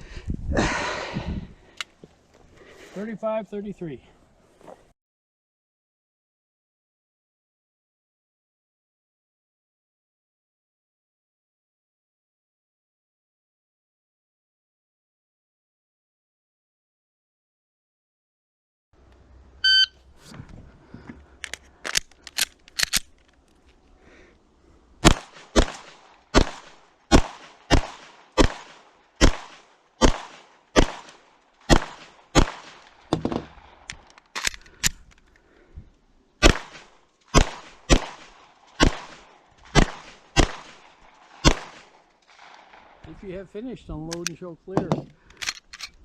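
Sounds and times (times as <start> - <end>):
shot timer beep: 19.6 - 20.0
pistol shots: 25.0 - 33.9, 36.4 - 43.0.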